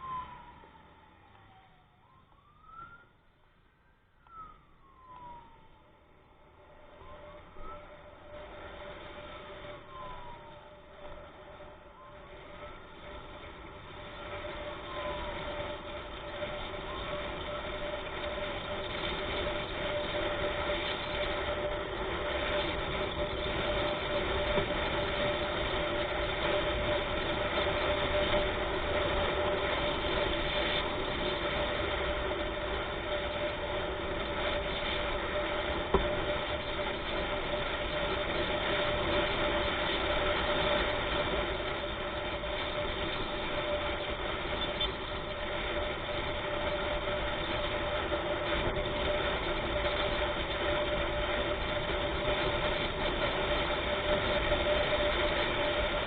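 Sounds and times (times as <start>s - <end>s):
vehicle engine and road noise: 0.0s - 56.0s.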